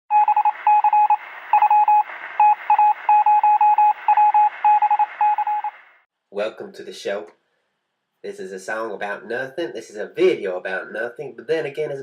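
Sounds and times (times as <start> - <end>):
short electronic beeps: 0.1 - 5.8.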